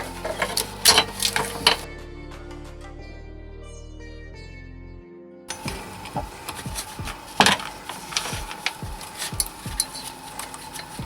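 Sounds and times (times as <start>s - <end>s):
clicks and scrapes of parts: 0.0s - 1.9s, 5.5s - 11.0s.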